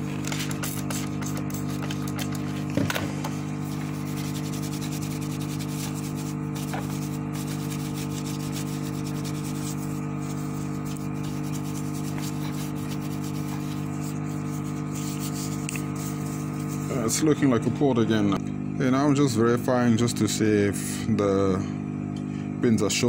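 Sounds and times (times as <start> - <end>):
brush scrubbing circuit board: 0.0 - 2.7, 3.4 - 17.4
electrical hum: 0.0 - 23.0.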